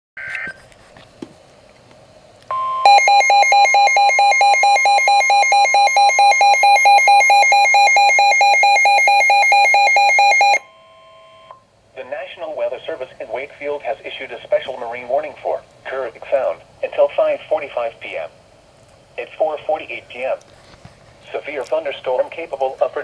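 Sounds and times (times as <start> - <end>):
two-pitch electronic beep: 2.5 - 10.7
steady warning tone: 2.5 - 11.6.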